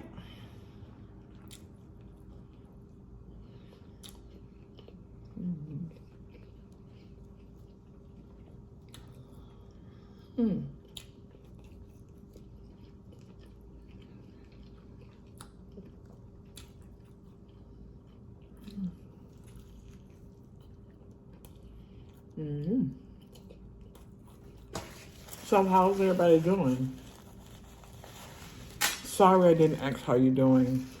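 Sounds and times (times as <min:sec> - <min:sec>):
person chewing: 0:01.1 - 0:10.2, 0:10.8 - 0:22.4, 0:23.1 - 0:26.2.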